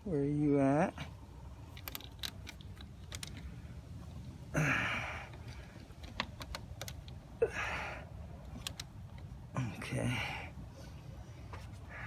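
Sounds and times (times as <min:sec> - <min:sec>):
light clicks of small parts and tools: 0:01.7 - 0:03.6, 0:08.4 - 0:09.4
man exhaling heavily: 0:04.5 - 0:05.3.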